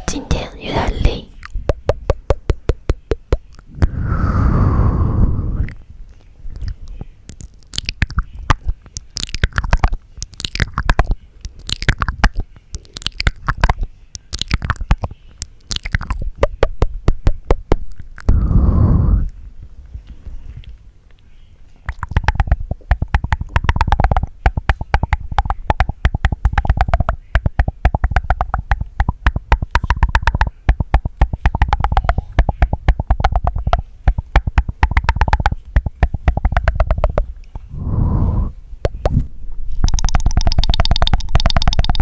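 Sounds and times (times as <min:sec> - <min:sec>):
wet tongue clicks: 0:01.4 - 0:03.8, 0:06.6 - 0:18.4, 0:21.8 - 0:37.7, 0:38.8 - 0:42.0
long mouth sound: 0:02.9 - 0:05.8, 0:07.4 - 0:19.4, 0:21.8 - 0:42.0.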